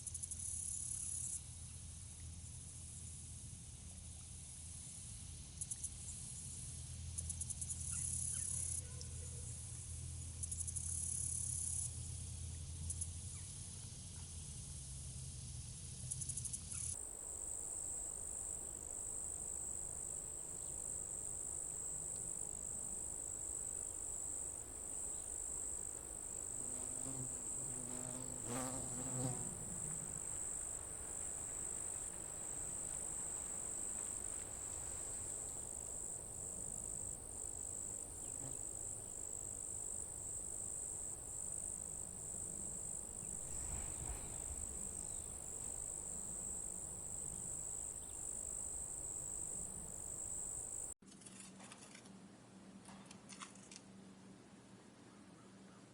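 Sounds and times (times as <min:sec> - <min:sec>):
insects trilling: 0:17.0 - 0:51.0.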